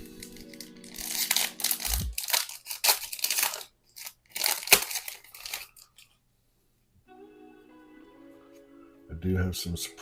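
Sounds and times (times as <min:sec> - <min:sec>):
foil wrapper crinkling: 0:00.0 - 0:06.1.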